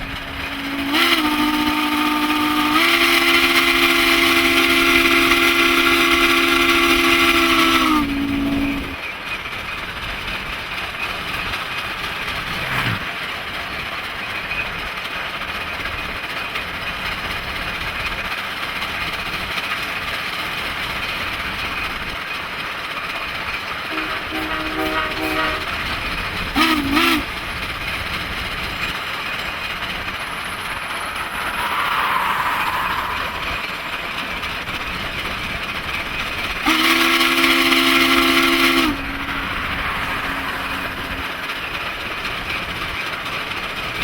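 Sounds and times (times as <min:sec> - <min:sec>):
steam whistle blast: 0:00.0 - 0:09.0, 0:23.9 - 0:27.6, 0:30.0 - 0:42.2
steam train rumbling: 0:00.0 - 0:44.0
faint broken whistle: 0:07.0 - 0:09.0, 0:30.1 - 0:35.2.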